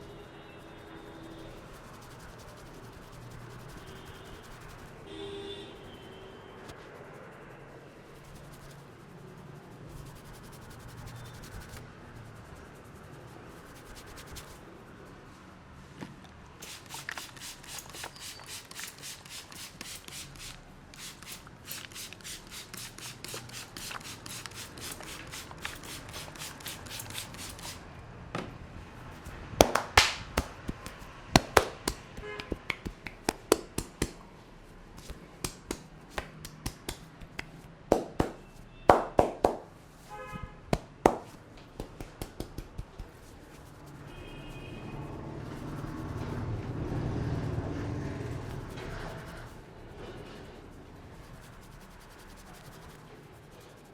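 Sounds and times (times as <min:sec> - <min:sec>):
hands rubbing scalp: 0:01.2 - 0:05.1, 0:06.6 - 0:15.2, 0:16.6 - 0:27.8, 0:29.0 - 0:40.1, 0:40.7 - 0:46.5, 0:48.4 - 0:53.9
hair cracking snaps and slaps: 0:29.6 - 0:30.8.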